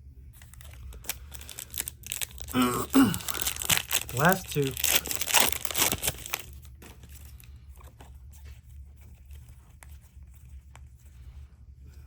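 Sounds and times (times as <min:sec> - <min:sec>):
cellophane wrapper crinkling and tearing: 0:00.4 - 0:08.0.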